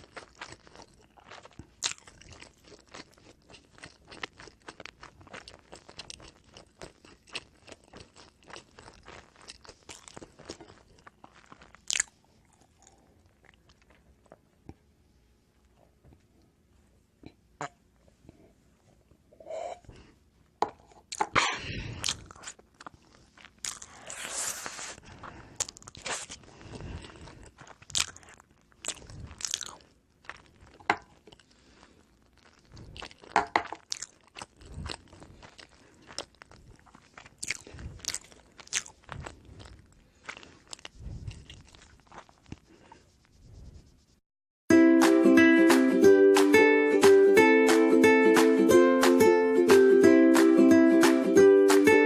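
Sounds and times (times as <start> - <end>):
person biting and chewing bread: 0.0 - 14.4, 21.0 - 43.7.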